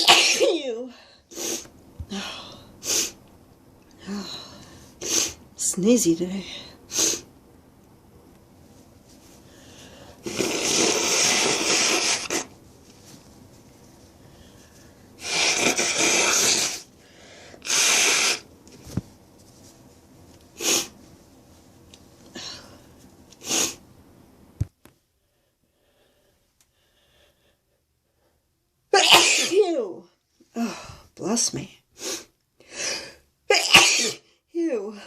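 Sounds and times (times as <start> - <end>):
woman sneezing: 0.0 - 1.6, 28.9 - 29.9, 33.5 - 34.2.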